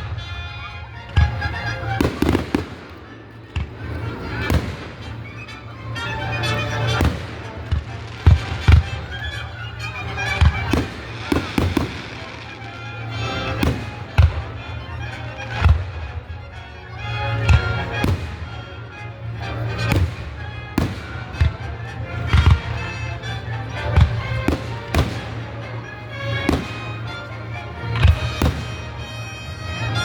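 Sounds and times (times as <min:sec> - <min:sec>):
music playing: 0:00.0 - 0:30.0
fireworks booming: 0:01.2 - 0:05.6, 0:06.5 - 0:12.7, 0:13.4 - 0:14.5, 0:26.3 - 0:27.0, 0:27.9 - 0:30.0.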